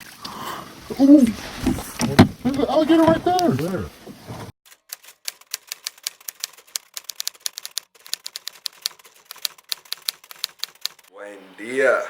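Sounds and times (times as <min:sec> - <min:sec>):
typewriter keys clicking: 0:04.9 - 0:11.1.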